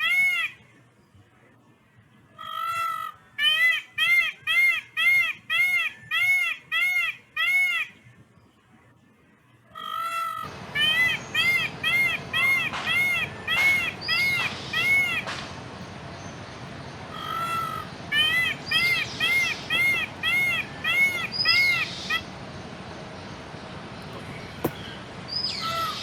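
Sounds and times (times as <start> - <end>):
peacock calling: 9.8 - 26.0.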